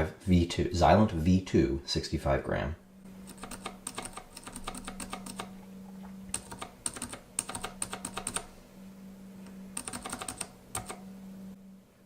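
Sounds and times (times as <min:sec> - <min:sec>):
muted keyboard switch clicks: 0:06.4 - 0:08.5, 0:09.8 - 0:11.0.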